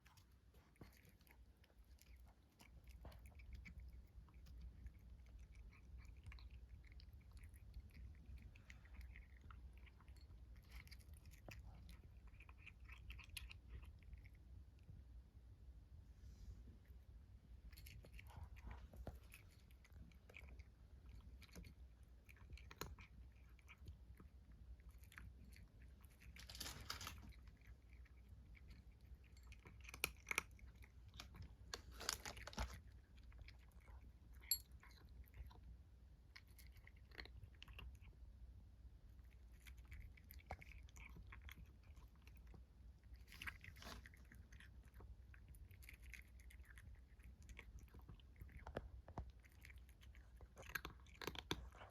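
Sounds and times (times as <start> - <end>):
kitten chewing food: 0.0 - 51.9.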